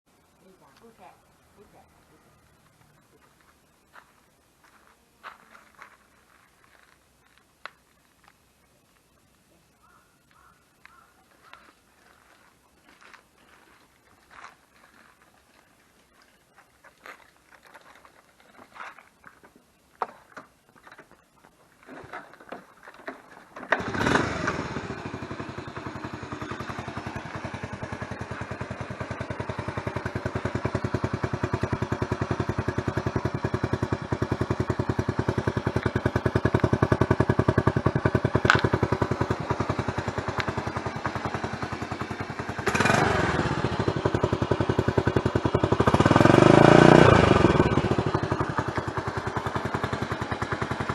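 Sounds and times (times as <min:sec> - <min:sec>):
motorcycle engine idling: 0:23.8 - 0:50.9.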